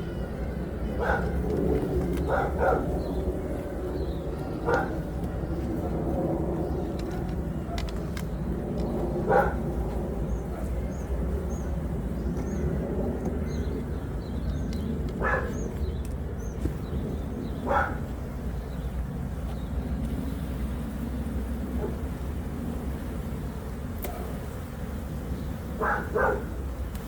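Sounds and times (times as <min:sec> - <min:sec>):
bees buzzing: 0:00.0 - 0:27.0
dog barking: 0:01.0 - 0:01.5, 0:02.2 - 0:03.0, 0:04.6 - 0:05.0, 0:09.2 - 0:09.6, 0:15.2 - 0:15.6, 0:17.6 - 0:18.1, 0:21.7 - 0:22.0, 0:25.8 - 0:26.6.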